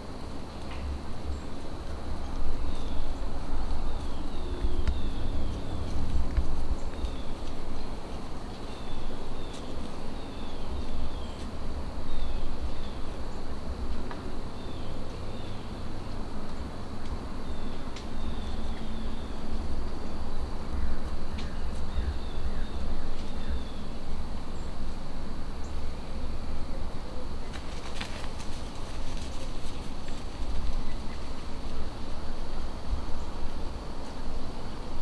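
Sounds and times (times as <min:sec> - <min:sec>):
wind rumbling on microphone: 0:00.8 - 0:14.1.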